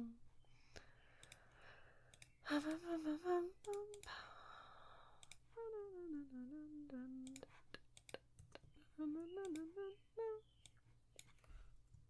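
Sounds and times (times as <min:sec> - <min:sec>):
woman humming: 0:00.0 - 0:00.2, 0:02.4 - 0:10.7
light sharp clicks: 0:01.2 - 0:02.8
breathy sigh: 0:04.0 - 0:05.3.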